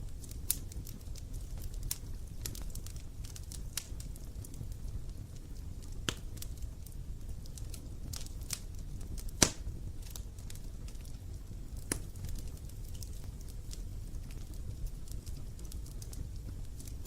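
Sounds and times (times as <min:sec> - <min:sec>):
campfire crackling and popping: 0:00.0 - 0:17.0.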